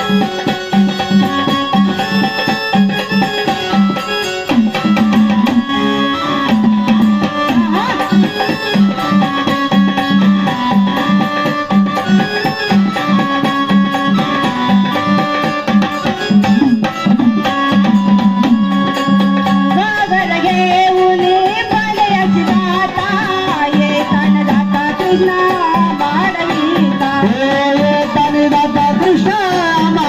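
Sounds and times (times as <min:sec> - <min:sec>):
melodic instrument: 0:00.0 - 0:28.1
hand drums: 0:00.0 - 0:30.0
person singing: 0:19.6 - 0:30.0.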